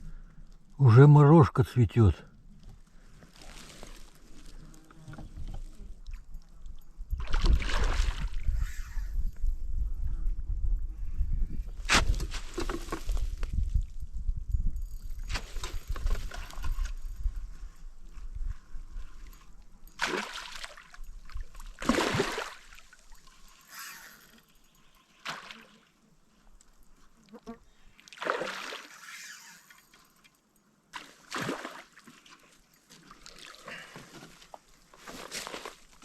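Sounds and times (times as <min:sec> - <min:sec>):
water splashing and sloshing: 0:02.6 - 0:06.5, 0:07.1 - 0:08.6, 0:19.2 - 0:24.3, 0:25.0 - 0:26.0, 0:28.0 - 0:30.3, 0:30.9 - 0:36.0.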